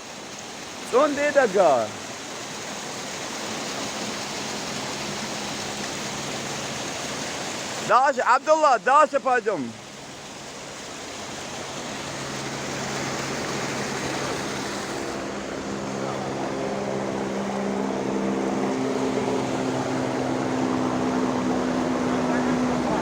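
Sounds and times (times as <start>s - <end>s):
constant rushing noise: 0.0s - 23.0s
vehicle engine humming: 11.4s - 23.0s.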